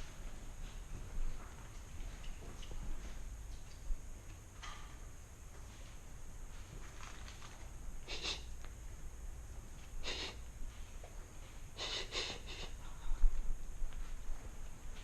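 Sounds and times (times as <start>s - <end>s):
person breathing noisily: 10.0s - 10.4s, 11.8s - 13.4s.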